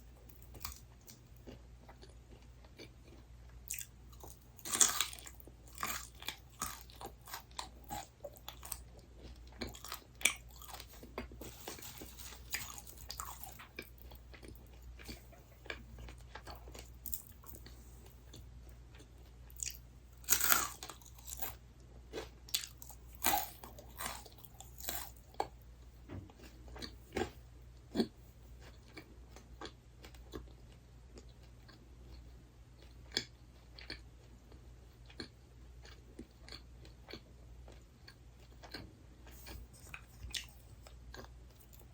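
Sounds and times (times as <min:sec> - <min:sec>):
chewing crunchy snack: 0:00.2 - 0:25.6, 0:26.3 - 0:41.9.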